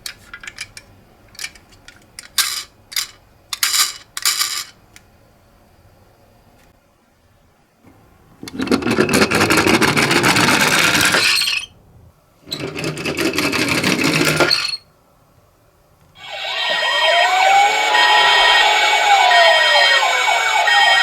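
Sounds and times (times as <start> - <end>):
toy cars rattling rolling: 0.2 - 4.8, 8.4 - 11.7, 12.5 - 14.8.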